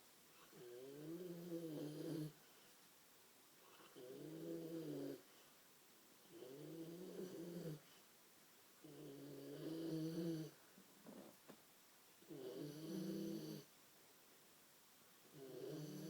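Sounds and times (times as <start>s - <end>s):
person snoring: 15.4s - 16.0s.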